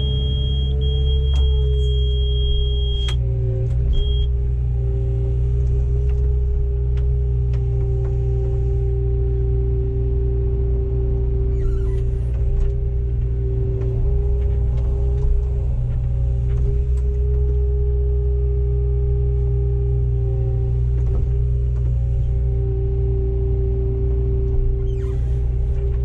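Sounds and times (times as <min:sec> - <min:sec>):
high electronic beep: 0:00.0 - 0:03.2, 0:04.0 - 0:04.3
constant whine: 0:00.0 - 0:26.0
diesel engine running: 0:00.0 - 0:26.0.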